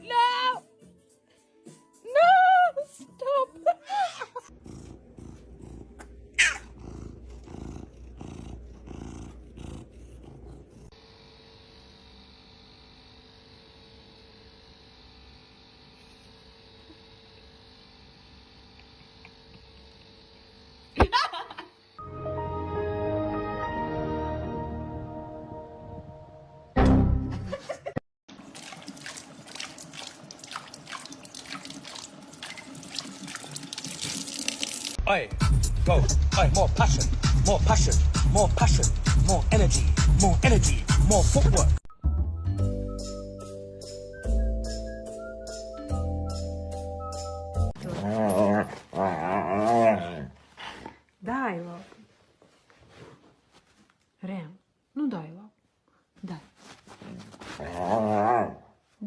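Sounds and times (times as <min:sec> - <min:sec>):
cat purring: 0:04.5 - 0:11.0
water trickling into sink: 0:28.3 - 0:35.0.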